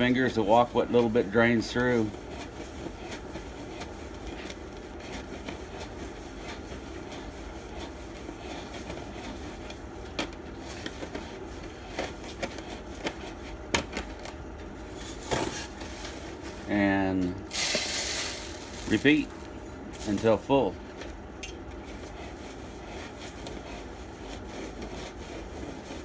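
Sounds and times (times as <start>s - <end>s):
dry sand trickling: 17.5s - 19.4s.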